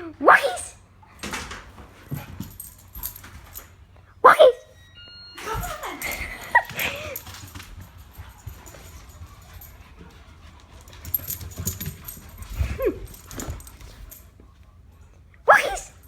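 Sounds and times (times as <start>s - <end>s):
dog whining: 15.5s - 16.0s.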